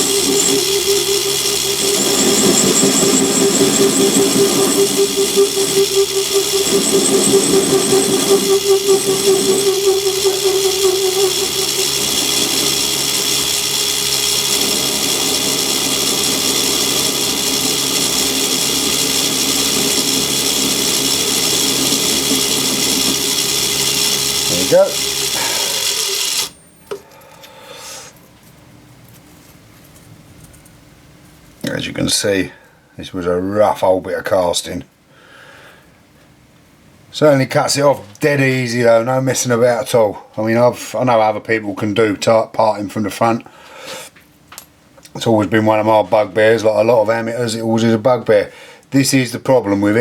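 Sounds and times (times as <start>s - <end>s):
lathe running: 0.0s - 27.0s
parting tool cutting whine: 0.0s - 27.5s.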